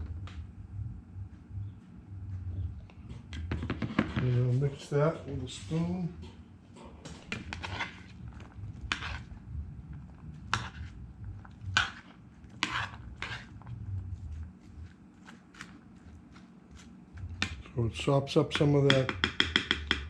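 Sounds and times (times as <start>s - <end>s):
spoon clinking and scraping bowl: 8.9s - 9.2s, 11.7s - 13.6s.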